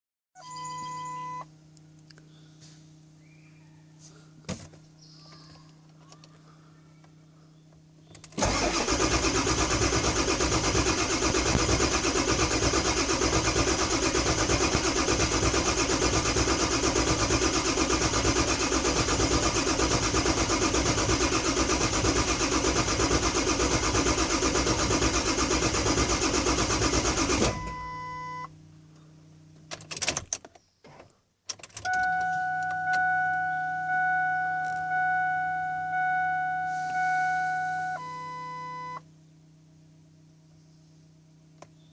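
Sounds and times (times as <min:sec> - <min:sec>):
short beep: 0:00.4 - 0:01.5, 0:31.9 - 0:39.0
diesel engine cranking on starter: 0:08.2 - 0:28.0.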